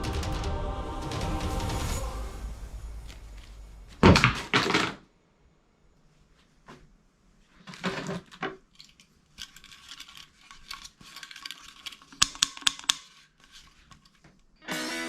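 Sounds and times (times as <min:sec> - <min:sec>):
small hard objects clattering: 0:07.6 - 0:13.9.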